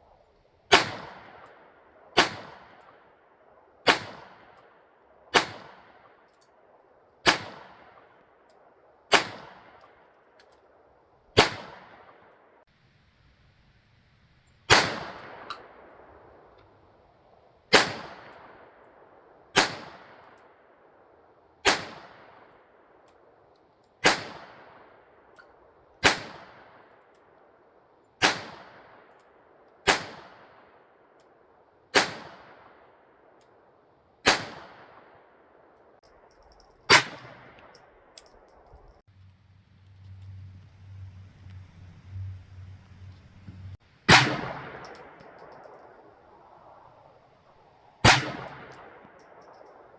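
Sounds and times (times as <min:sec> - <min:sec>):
pistol shots with echo: 0:00.7 - 0:01.5, 0:02.2 - 0:02.8, 0:03.8 - 0:04.6, 0:05.3 - 0:06.0, 0:07.2 - 0:08.0, 0:09.1 - 0:09.8, 0:11.4 - 0:12.3, 0:14.7 - 0:16.2, 0:17.7 - 0:18.7, 0:34.2 - 0:35.2, 0:36.9 - 0:38.2, 0:44.1 - 0:46.0, 0:48.0 - 0:49.9.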